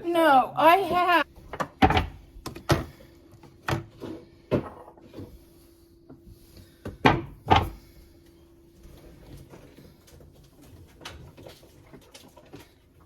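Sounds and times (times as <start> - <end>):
faint steady hum: 0.0 - 13.0
knocks and clatters of fridge parts: 0.9 - 5.5, 6.1 - 8.0.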